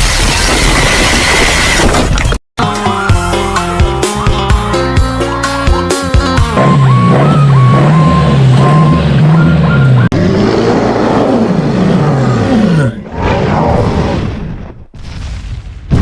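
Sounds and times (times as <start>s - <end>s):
heavy truck engine running: 5.4s - 10.1s
engine revving: 5.6s - 13.0s
reversing alarm beeps: 6.5s - 10.1s.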